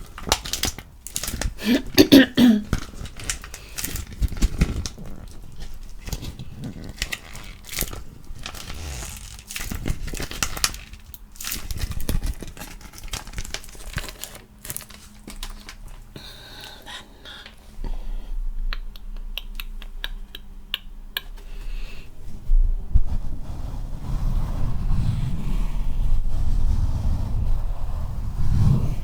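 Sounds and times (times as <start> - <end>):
crinkling and crumpling: 0.0 - 17.7.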